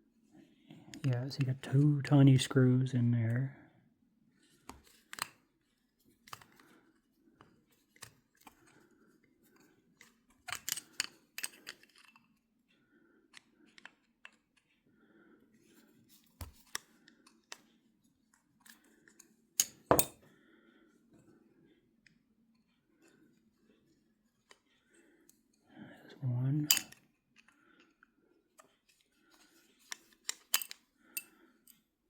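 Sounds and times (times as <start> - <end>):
small metal parts clicking: 30.2 - 31.3.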